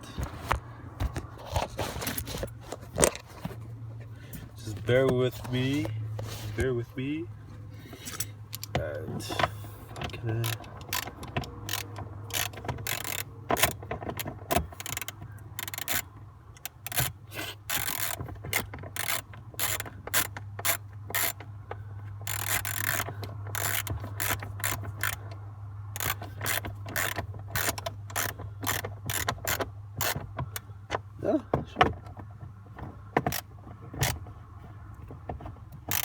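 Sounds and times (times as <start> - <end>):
hand ratchet clicking: 7.9 - 31.0, 35.7 - 36.0.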